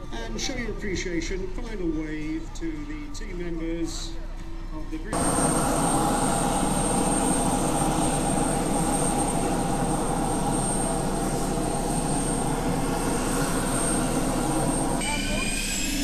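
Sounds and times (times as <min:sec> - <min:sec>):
aircraft engine noise: 0:05.1 - 0:16.0
thin high whine: 0:05.1 - 0:16.0.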